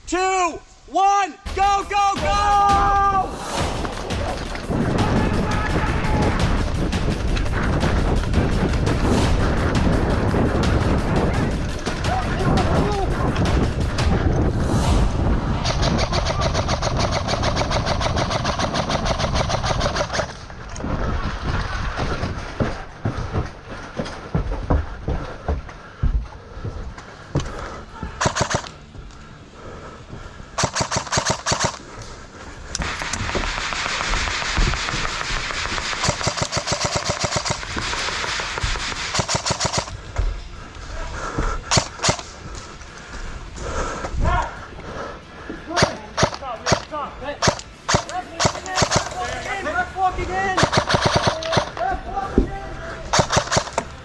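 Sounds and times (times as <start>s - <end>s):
airsoft rifle full-auto burst: 15.6s - 20.4s, 28.2s - 28.7s, 30.6s - 31.8s, 32.8s - 39.9s, 45.8s - 49.2s, 50.6s - 51.8s, 53.1s - 53.8s.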